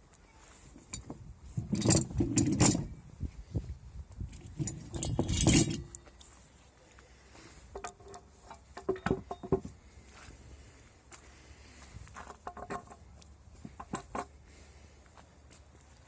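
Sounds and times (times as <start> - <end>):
metal parts clinking and knocking: 0.8 - 3.0, 4.3 - 6.4, 7.7 - 9.8, 12.3 - 14.3.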